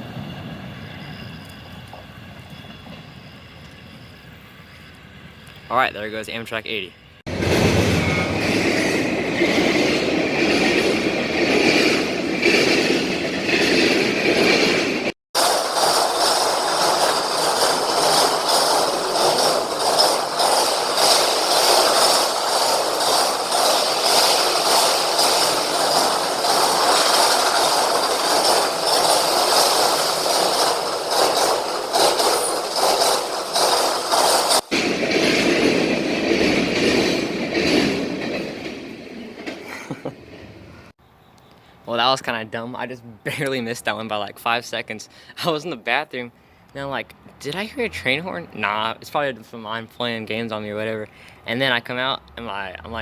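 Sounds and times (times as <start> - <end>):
train wheels rushing on rail: 0.0 - 40.9.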